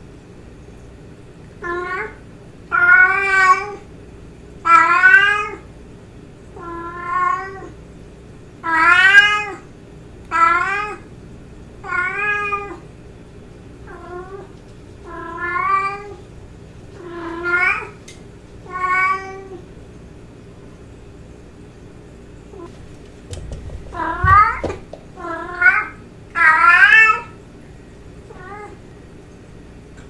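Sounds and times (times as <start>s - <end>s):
cat meowing: 4.7s - 5.6s, 8.7s - 9.6s, 11.8s - 12.8s, 15.1s - 16.2s, 17.0s - 18.0s, 18.7s - 19.6s, 23.3s - 27.4s, 28.3s - 28.8s.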